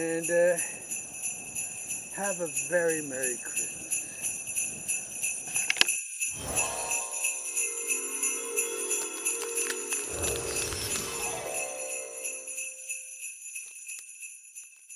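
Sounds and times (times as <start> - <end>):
sleigh bells jingling: 0.0 - 14.9.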